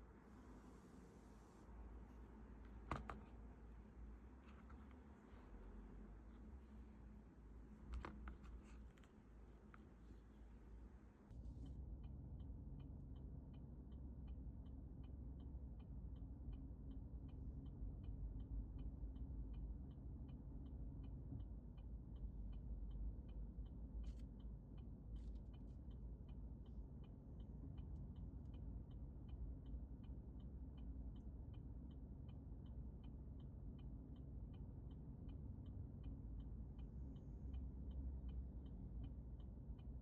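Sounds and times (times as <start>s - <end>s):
car engine rumble and road noise: 0.0s - 40.0s
turn signal ticking: 12.0s - 40.0s.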